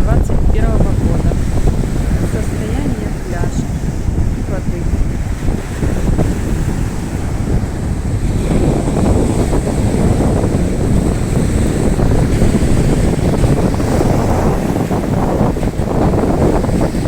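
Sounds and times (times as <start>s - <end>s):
sea surf breaking on shore: 0.0s - 17.0s
wind buffeting microphone: 0.0s - 17.0s.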